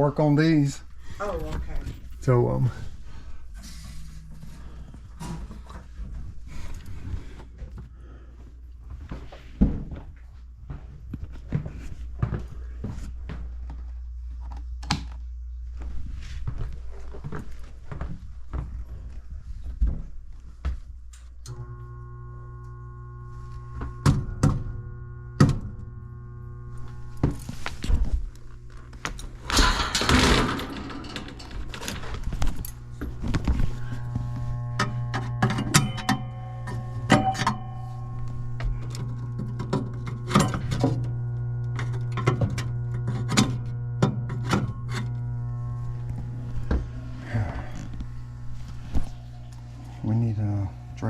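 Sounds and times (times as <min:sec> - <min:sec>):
motor humming: 0:21.4 - 0:51.0
metal parts clicking and knocking: 0:29.5 - 0:32.7.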